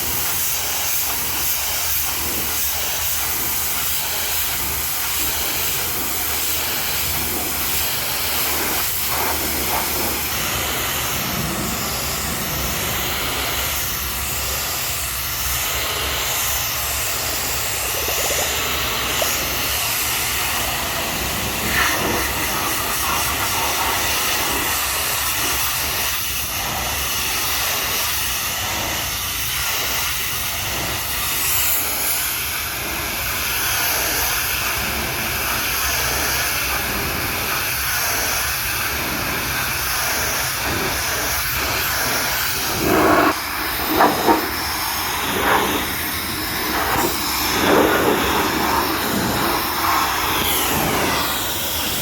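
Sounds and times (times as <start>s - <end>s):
pressure washer water hissing: 0.0s - 52.0s.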